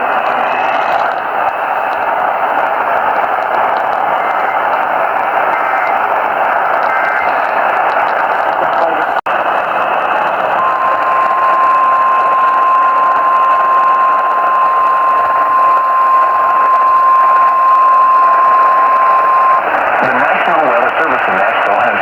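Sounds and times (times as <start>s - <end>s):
radio static hiss: 0.0s - 22.0s
steady alarm beep: 10.6s - 19.6s.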